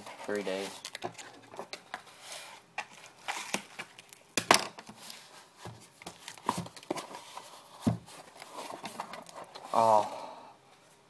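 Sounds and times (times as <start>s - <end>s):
packaging crinkling and tearing: 2.8s - 4.3s.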